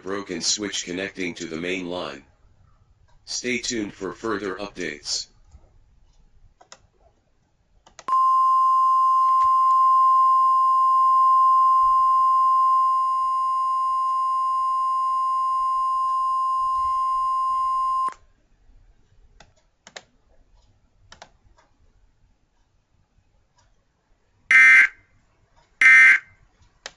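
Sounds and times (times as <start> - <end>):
steady electronic beep: 8.1 - 18.1.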